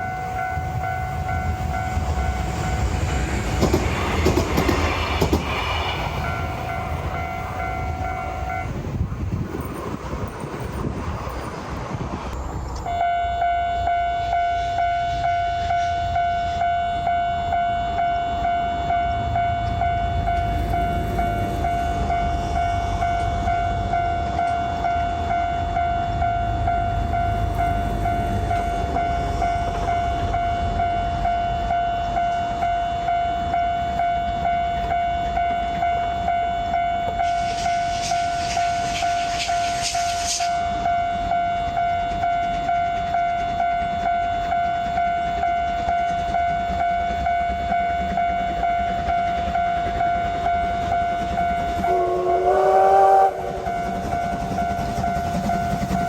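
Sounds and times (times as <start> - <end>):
level-crossing warning bell: 0.0 - 10.9, 12.3 - 56.0
train rumbling past: 0.0 - 56.0
hissing rush: 0.6 - 12.6, 37.2 - 40.8.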